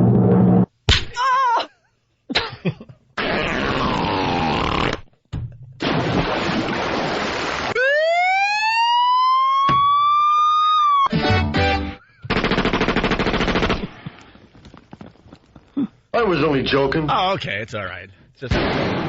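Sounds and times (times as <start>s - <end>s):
rising siren-like tone: 7.8s - 11.1s.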